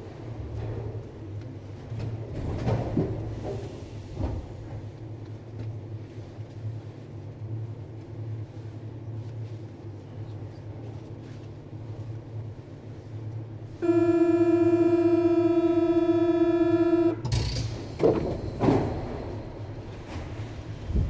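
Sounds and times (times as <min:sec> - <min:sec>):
metro car hum and rumble: 0:00.0 - 0:21.0
loud buzzy steady tone: 0:13.8 - 0:17.4.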